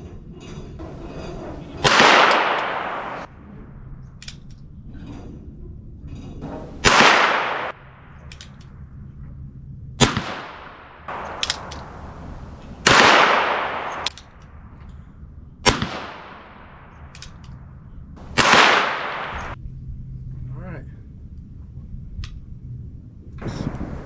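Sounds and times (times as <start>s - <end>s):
revolver shots echoing: 1.8s - 3.3s, 6.4s - 7.8s, 10.0s - 14.1s, 18.2s - 19.6s.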